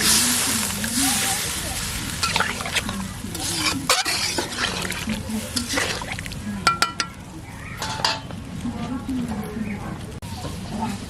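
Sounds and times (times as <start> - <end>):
metal utensil scraping cooking pot: 2.2 - 7.2, 7.8 - 8.3.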